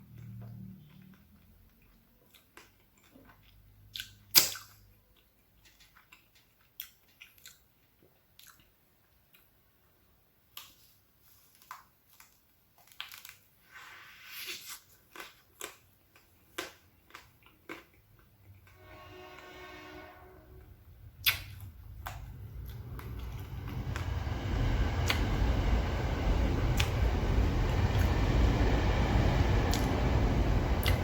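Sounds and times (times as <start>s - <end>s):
crunchy chewing: 14.3s - 18.7s.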